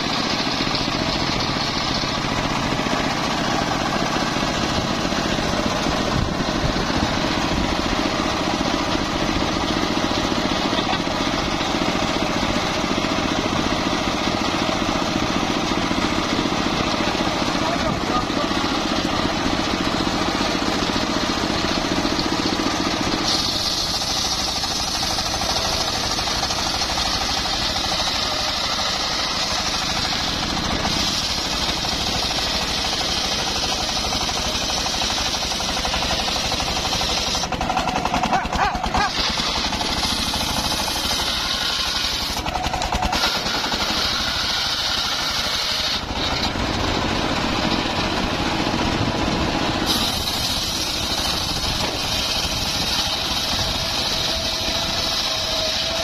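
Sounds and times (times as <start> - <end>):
sawmill engine drone: 0.0 - 56.0
saw blade hissing through wood: 21.5 - 37.6, 38.6 - 46.6, 49.6 - 56.0.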